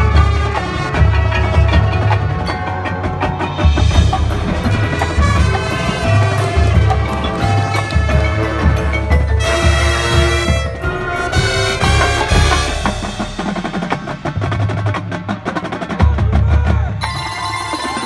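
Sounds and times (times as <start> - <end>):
rapid drum strokes: 0.0 - 17.1
marching band playing: 0.0 - 18.0.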